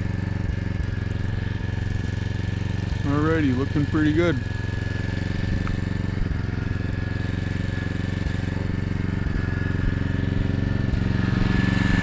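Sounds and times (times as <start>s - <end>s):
engine idling: 0.0s - 12.0s
thin steady whine: 0.0s - 12.0s.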